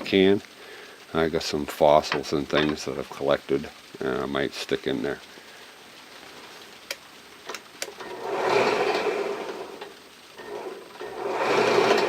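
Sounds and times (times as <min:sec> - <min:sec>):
power drill running: 0:08.0 - 0:12.0.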